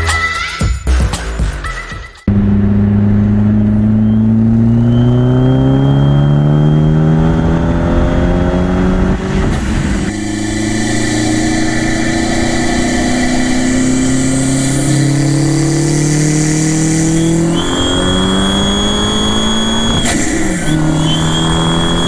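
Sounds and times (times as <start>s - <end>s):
car engine accelerating: 2.3s - 22.0s
turbo whistle: 3.6s - 8.3s, 10.1s - 22.0s.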